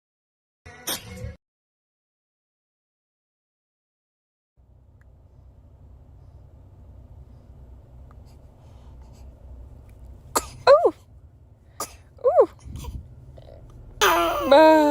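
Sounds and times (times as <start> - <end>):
low steady hum: 4.6 - 14.9.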